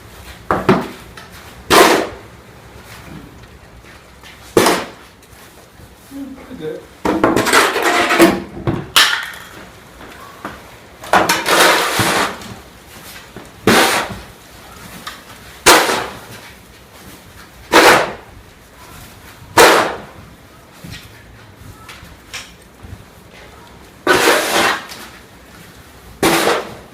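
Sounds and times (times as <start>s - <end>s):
snow shovel scraping snow: 11.4s - 12.6s, 13.7s - 14.2s, 24.1s - 25.1s, 26.2s - 26.9s.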